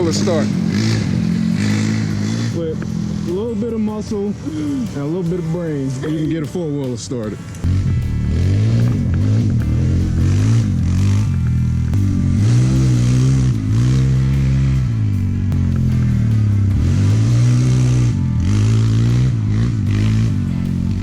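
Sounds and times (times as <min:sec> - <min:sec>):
atv engine revving: 0:00.0 - 0:21.0.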